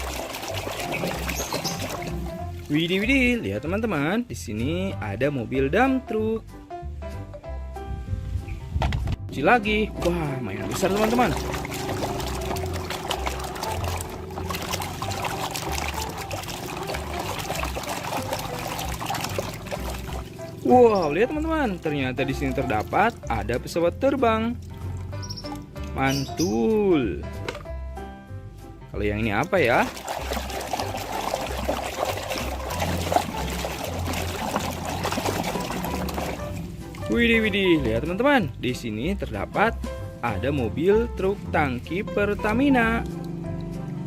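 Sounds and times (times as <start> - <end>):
knocks and splashes from handling: 0.0 - 2.8, 10.0 - 20.6, 29.4 - 37.2
water pouring and trickling: 0.0 - 3.3, 10.0 - 27.0, 29.0 - 38.0.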